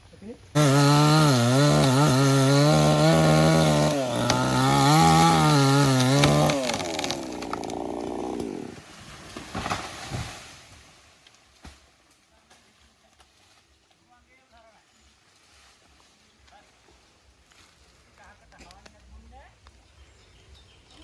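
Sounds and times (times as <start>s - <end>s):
chainsaw cutting wood: 0.6s - 10.3s.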